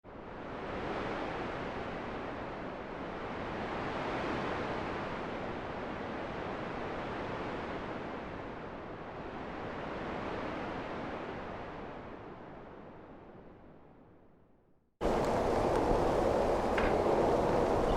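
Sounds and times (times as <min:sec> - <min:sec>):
wind blowing: 0:15.0 - 0:17.9.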